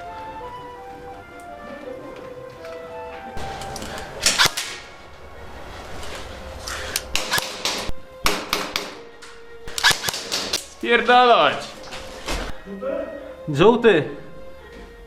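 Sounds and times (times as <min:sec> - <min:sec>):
airsoft guns firing: 0:03.4 - 0:05.1, 0:07.0 - 0:10.9.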